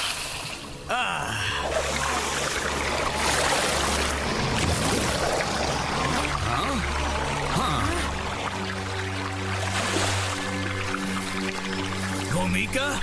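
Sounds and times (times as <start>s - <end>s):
rushing water sound effect: 0.0s - 13.0s
low sustained background music: 0.2s - 13.0s.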